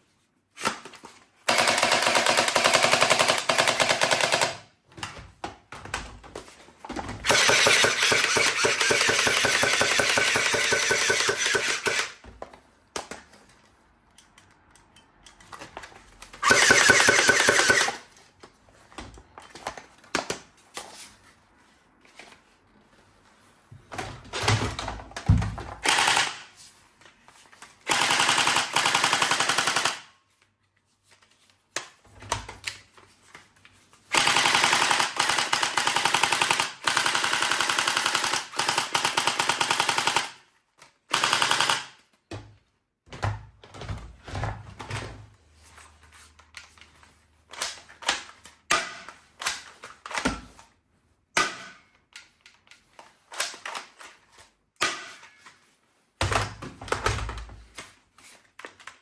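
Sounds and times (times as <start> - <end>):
toy machine gun rattling: 1.5 - 4.6, 7.2 - 12.2, 16.4 - 18.0, 27.9 - 30.1, 34.1 - 40.4, 41.1 - 42.0.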